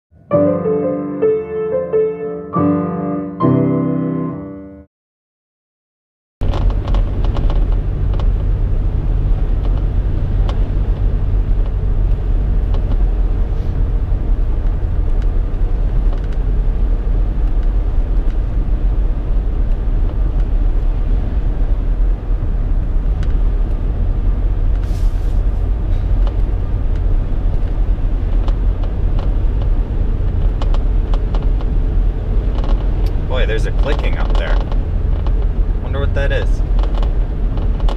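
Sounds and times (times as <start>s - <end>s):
road and engine rumble in car: 6.4s - 37.9s.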